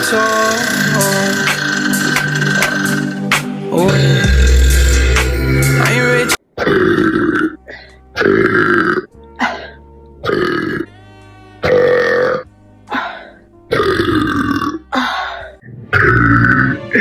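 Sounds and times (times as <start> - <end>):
woman burping: 6.6 - 10.9, 11.6 - 13.1, 13.7 - 17.0.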